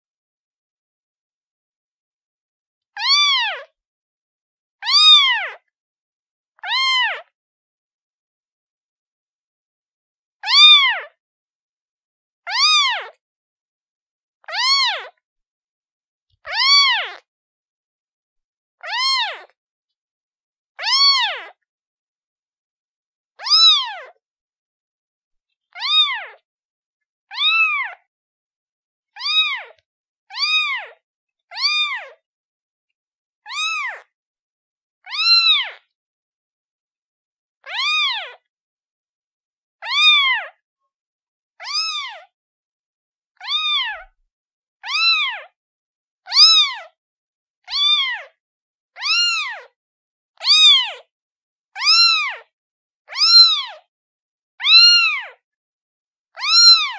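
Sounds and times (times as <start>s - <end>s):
kitten meowing: 3.0s - 3.6s, 4.8s - 5.6s, 6.6s - 7.3s, 10.4s - 11.0s, 12.5s - 13.2s, 14.4s - 15.1s, 16.5s - 17.2s, 18.8s - 19.5s, 20.8s - 21.6s, 23.4s - 24.2s, 25.7s - 26.4s, 27.3s - 28.0s, 29.2s - 32.2s, 33.5s - 34.1s, 35.1s - 35.8s, 37.7s - 38.4s, 39.8s - 40.6s, 41.6s - 42.3s, 43.4s - 44.1s, 44.8s - 45.5s, 46.3s - 46.9s, 47.7s - 48.3s, 49.0s - 49.8s, 50.4s - 51.0s, 51.8s - 52.5s, 53.1s - 53.8s, 54.6s - 55.4s, 56.4s - 56.9s.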